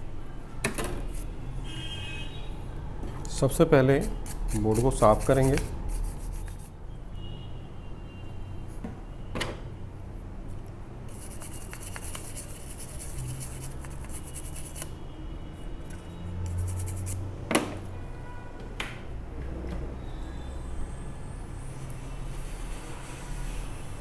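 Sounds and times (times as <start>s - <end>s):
brush scrubbing circuit board: 4.0s - 6.7s, 11.1s - 14.9s, 16.5s - 17.2s.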